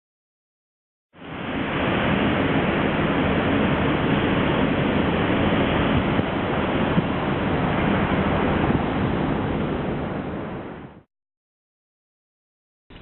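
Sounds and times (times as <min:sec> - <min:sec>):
steady rushing noise: 0:01.2 - 0:11.0.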